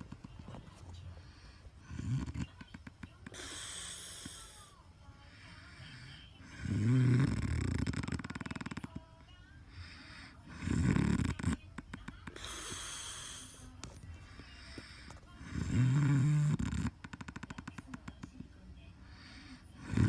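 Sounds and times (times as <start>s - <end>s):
man snoring: 6.5s - 8.7s, 10.5s - 11.6s, 15.5s - 16.9s, 19.8s - 20.0s.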